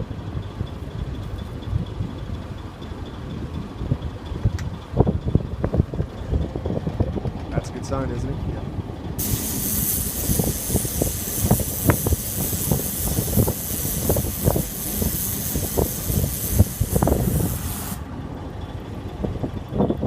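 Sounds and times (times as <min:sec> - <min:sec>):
pressurised gas hissing: 0:09.2 - 0:18.1.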